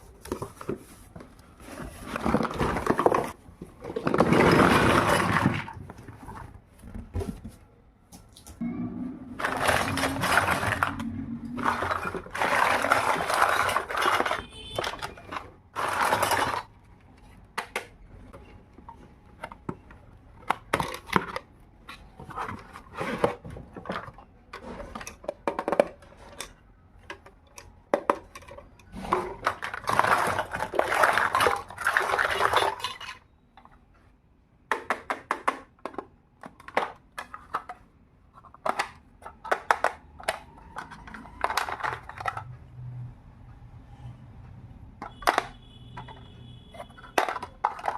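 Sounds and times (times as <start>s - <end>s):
packaging rustling: 0.0s - 7.6s, 9.4s - 16.8s, 28.9s - 33.1s.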